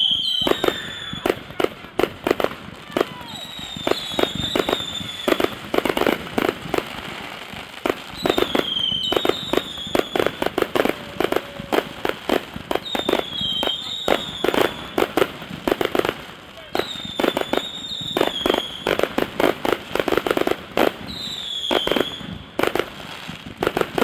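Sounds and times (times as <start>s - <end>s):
fireworks bangs and crackles: 0.0s - 24.0s
high falling whistles: 3.3s - 5.5s.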